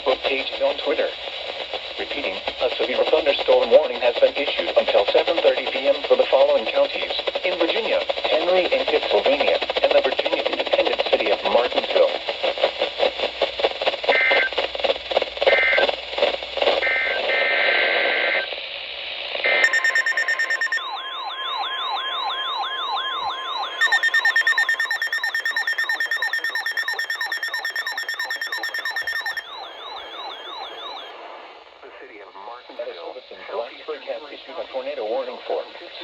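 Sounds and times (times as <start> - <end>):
data tone bursts: 19.6 - 31.1
warbling electronic alert tone: 19.6 - 31.1.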